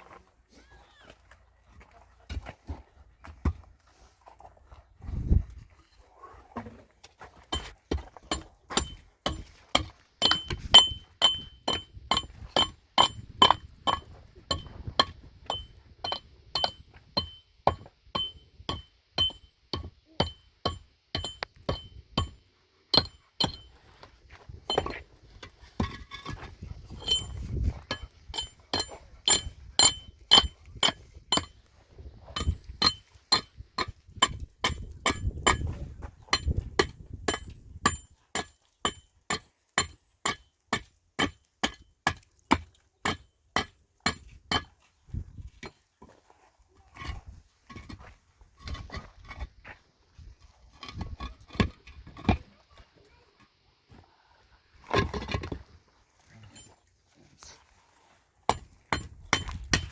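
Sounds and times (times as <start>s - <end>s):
metal strikes clinking: 10.2s - 17.4s, 18.2s - 22.3s, 23.0s - 23.7s, 24.7s - 25.0s, 27.0s - 31.6s, 32.4s - 35.6s.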